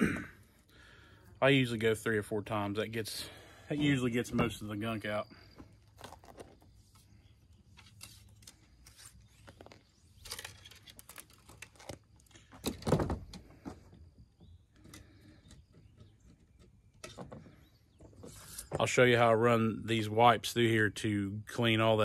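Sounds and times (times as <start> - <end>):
crinkly rustling: 5.8 - 7.1, 7.8 - 12.5.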